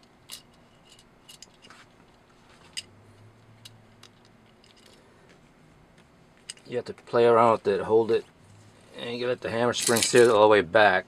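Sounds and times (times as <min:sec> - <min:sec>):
small metal parts clicking: 0:00.0 - 0:01.8, 0:03.6 - 0:05.0, 0:09.8 - 0:10.4.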